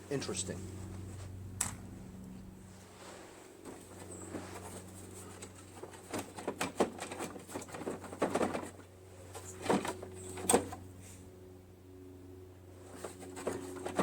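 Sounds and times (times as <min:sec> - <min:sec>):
low hum: 0:00.0 - 0:06.1.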